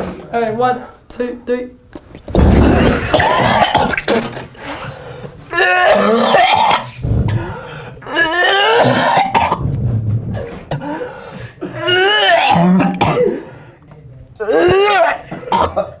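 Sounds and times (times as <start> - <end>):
man retching groans: 2.3 - 4.6, 5.5 - 9.7, 10.7 - 13.5, 14.4 - 16.0
man coughing and gagging: 2.4 - 4.5, 5.6 - 7.0, 8.1 - 9.7, 11.6 - 13.5, 14.4 - 16.0.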